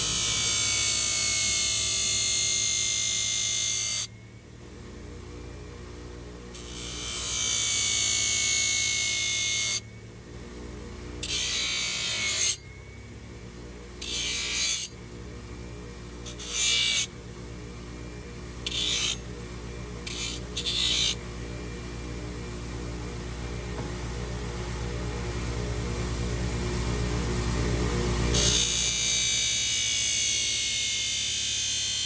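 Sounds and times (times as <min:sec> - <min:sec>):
steady low hum: 0:03.7 - 0:29.1.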